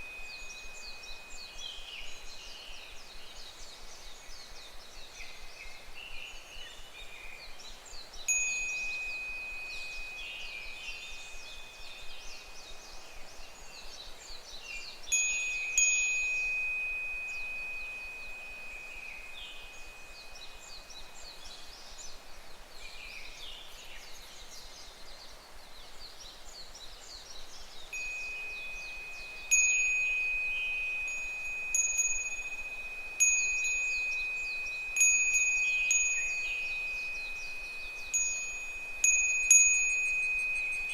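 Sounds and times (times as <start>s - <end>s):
wind chime ringing: 8.3s - 11.4s, 15.1s - 21.2s, 27.9s - 40.9s
cicadas calling: 14.4s - 24.1s, 27.8s - 40.9s.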